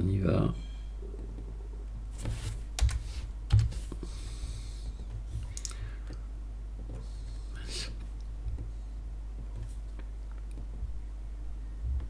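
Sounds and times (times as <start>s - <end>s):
steady low hum: 0.0s - 12.0s
keyboard and mouse clicks: 5.0s - 6.2s.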